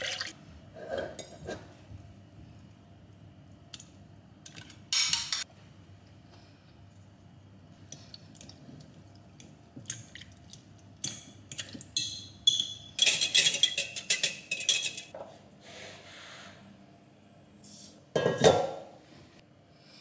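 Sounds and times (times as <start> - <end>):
cutlery clinking against dishes: 4.9 - 5.5, 12.0 - 15.2.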